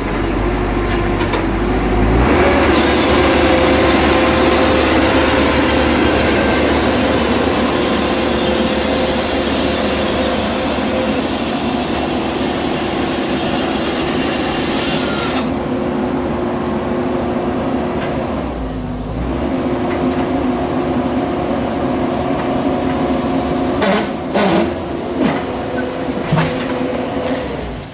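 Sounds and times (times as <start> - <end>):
chainsaw engine running: 2.2 - 14.6.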